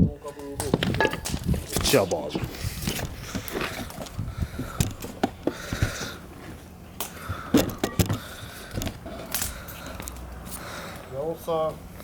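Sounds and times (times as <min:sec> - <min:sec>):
fire popping and knocking: 0:00.6 - 0:06.1.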